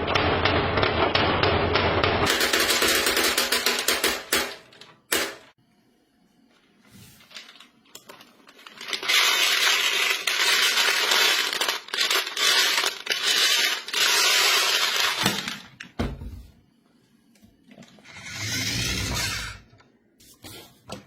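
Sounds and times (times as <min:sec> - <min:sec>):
marbles clattering on plastic track: 0:02.1 - 0:05.4, 0:07.3 - 0:15.7.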